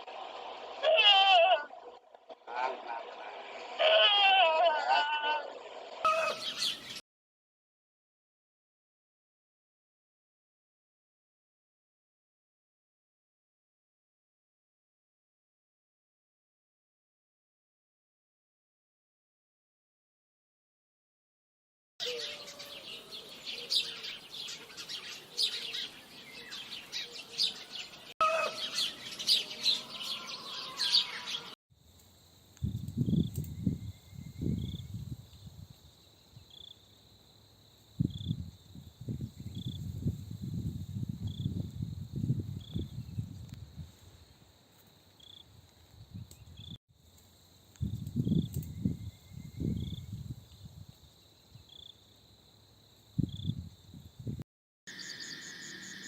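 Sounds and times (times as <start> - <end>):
low-pitched animal vocalising: 0.8 - 6.4
small birds chirping: 22.0 - 31.6, 54.9 - 56.0.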